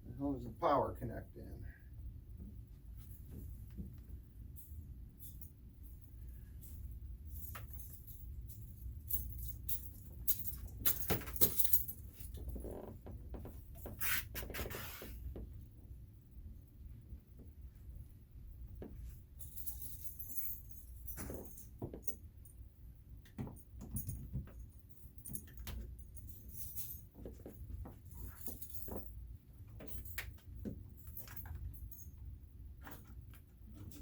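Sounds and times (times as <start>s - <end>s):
light metallic jingling: 3.0s - 14.2s, 19.0s - 22.6s, 23.5s - 34.0s.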